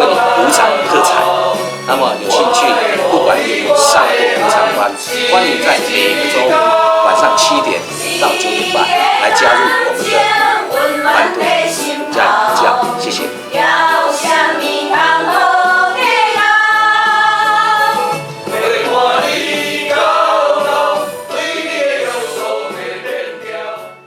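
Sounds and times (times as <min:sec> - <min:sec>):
person singing: 0:00.0 - 0:15.5
instrumental accompaniment: 0:00.0 - 0:16.2.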